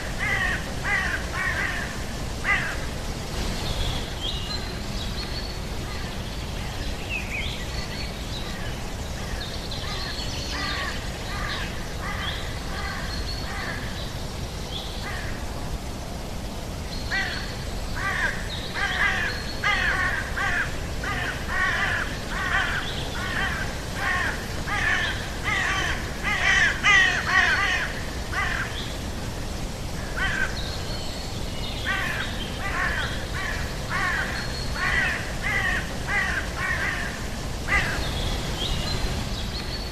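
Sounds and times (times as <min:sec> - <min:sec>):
harsh cawing bird calls: 0:00.0 - 0:02.9, 0:09.2 - 0:14.1, 0:17.1 - 0:29.0, 0:29.8 - 0:30.9, 0:31.8 - 0:38.5.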